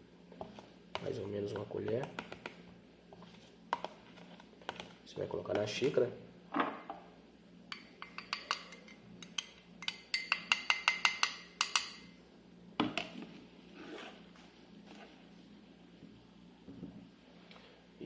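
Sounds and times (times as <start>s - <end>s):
spoon clinking against cup: 7.7s - 12.1s.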